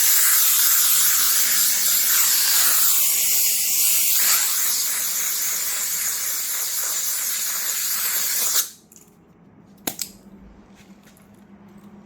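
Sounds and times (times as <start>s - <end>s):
air blow gun hissing: 0.0s - 8.8s.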